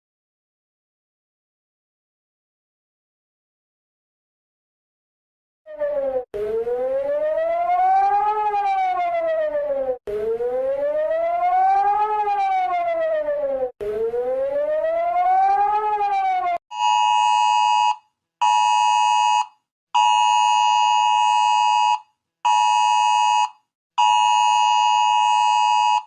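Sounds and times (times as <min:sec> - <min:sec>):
pulsing dual-tone alarm: 0:05.7 - 0:13.2, 0:13.8 - 0:26.0
electronic siren wailing: 0:05.7 - 0:18.0.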